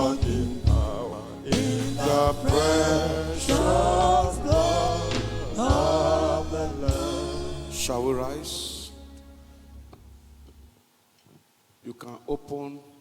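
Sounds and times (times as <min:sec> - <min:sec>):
band with bass and drums: 0:00.0 - 0:10.1
gospel singing: 0:00.0 - 0:10.5.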